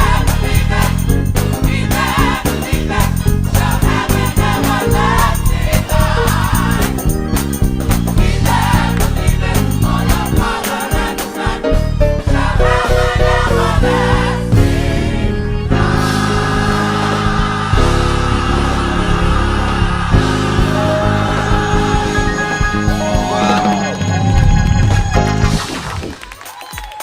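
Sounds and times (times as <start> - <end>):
driving bass line: 0.0 - 11.1, 11.8 - 25.8
drum beat: 0.0 - 11.7, 12.3 - 27.0
gospel choir singing: 0.0 - 24.4.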